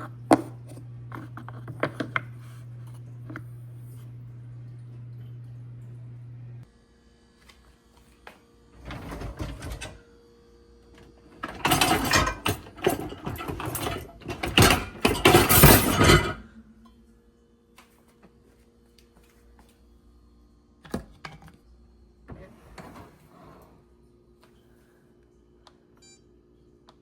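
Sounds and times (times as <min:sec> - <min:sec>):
household items rattling and scraping: 0:08.8 - 0:10.0, 0:11.3 - 0:16.4.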